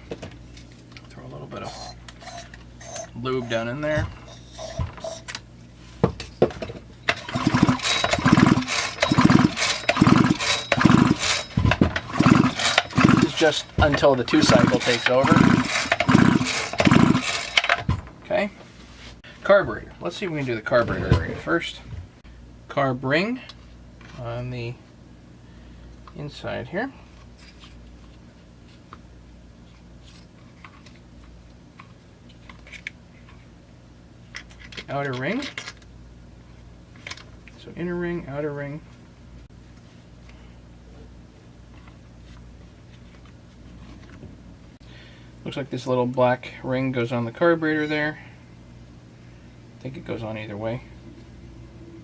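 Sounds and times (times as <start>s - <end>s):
steady low hum: 0.0s - 52.0s
small metal parts clicking: 7.1s - 17.9s
chainsaw starter rope pulls: 7.1s - 18.0s.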